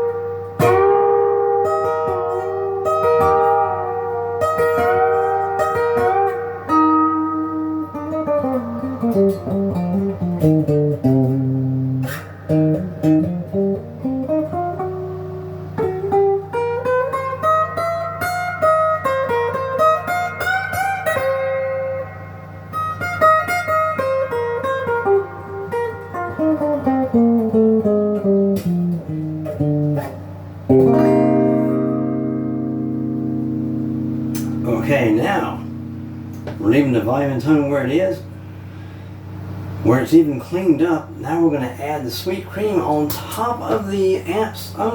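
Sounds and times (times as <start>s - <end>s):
electric guitar single-note runs: 0.0s - 39.8s
electric guitar chord ringing: 0.0s - 41.6s.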